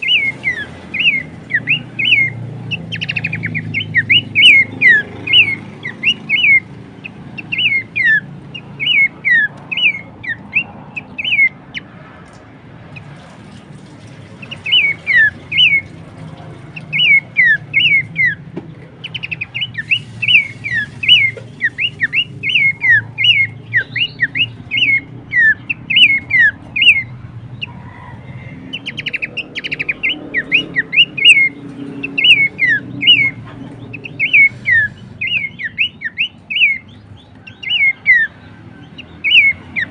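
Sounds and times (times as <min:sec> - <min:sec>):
bird whistling falling notes: 0:19.1 - 0:27.1.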